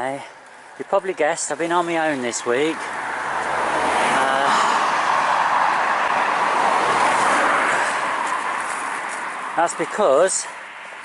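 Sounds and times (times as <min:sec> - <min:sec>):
car passing by: 0:02.2 - 0:11.0.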